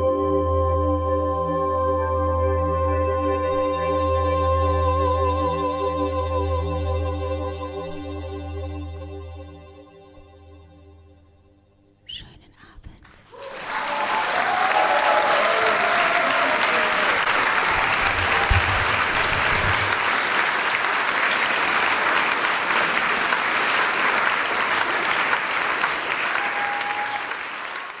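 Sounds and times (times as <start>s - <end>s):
audience applauding: 13.3s - 28.0s.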